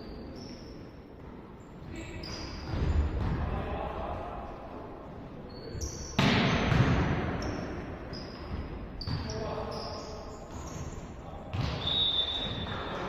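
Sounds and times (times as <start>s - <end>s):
shoes squeaking on court floor: 0.0s - 3.2s, 5.4s - 6.2s, 7.4s - 13.0s
volleyball impacts: 6.2s - 7.4s.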